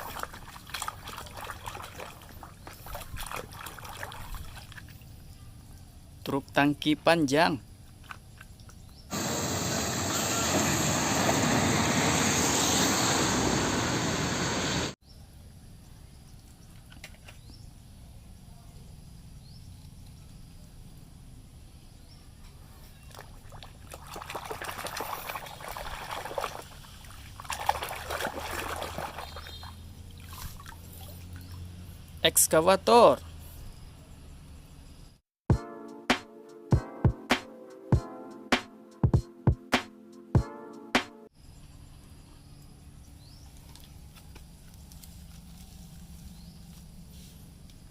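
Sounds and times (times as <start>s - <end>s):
splashing and rubbing: 0.0s - 5.1s, 23.1s - 31.7s.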